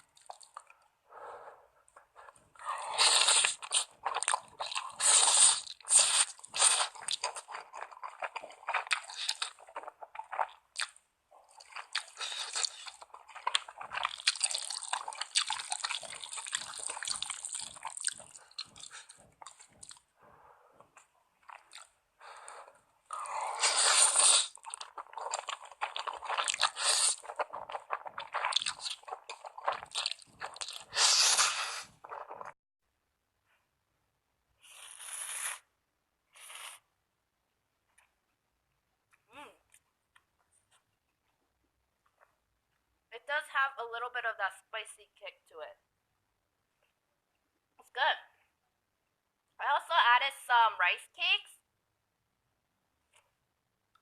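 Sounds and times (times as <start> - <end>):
wet chewing and smacking: 0.1 - 0.8, 1.9 - 20.1, 20.8 - 32.6
noodles slurped: 2.8 - 20.0, 21.5 - 32.6.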